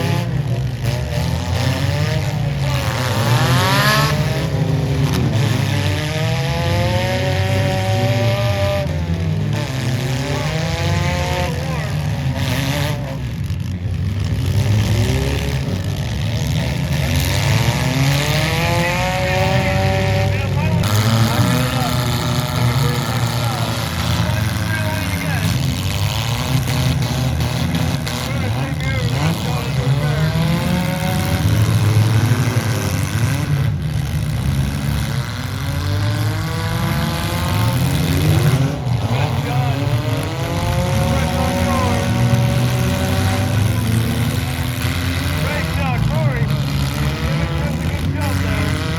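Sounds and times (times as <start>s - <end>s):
car engines revving: 0.0s - 48.9s.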